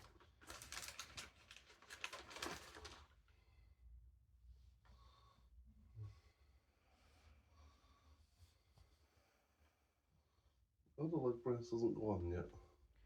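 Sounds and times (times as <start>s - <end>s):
faint rustling and handling: 0.0s - 3.3s.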